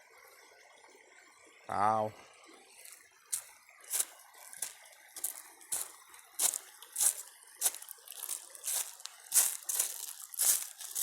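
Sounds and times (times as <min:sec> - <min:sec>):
footsteps crunching on dry ground: 0:02.8 - 0:11.0.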